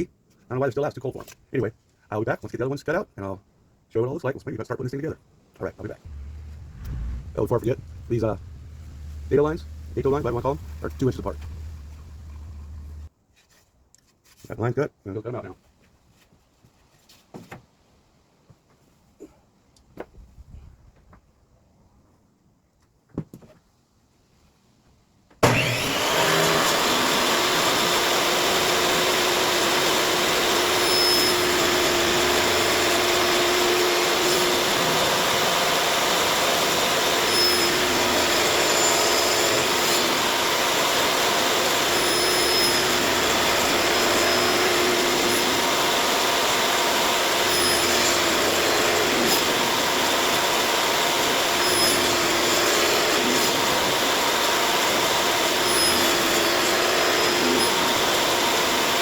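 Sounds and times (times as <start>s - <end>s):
woodshop machine motor running: 6.1s - 13.1s, 25.4s - 59.0s.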